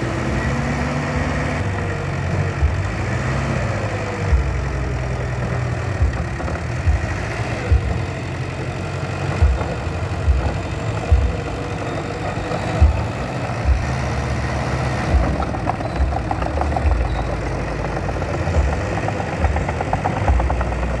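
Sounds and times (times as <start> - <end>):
bulldozer diesel engine: 0.0 - 21.0
short low thumps: 9.4 - 21.0.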